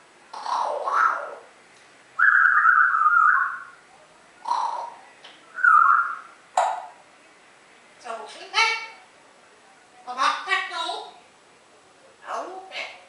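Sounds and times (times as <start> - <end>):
parrot call: 0.4 - 1.5, 2.2 - 3.8, 4.4 - 6.4
parrot squawk: 0.4 - 1.5, 2.2 - 3.8, 4.5 - 5.0, 5.6 - 6.4
parrot whistling: 2.2 - 3.8, 5.5 - 6.4.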